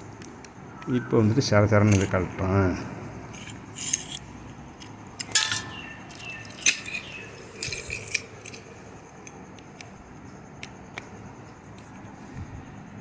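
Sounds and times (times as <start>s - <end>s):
small metal parts clinking: 3.3s - 9.5s.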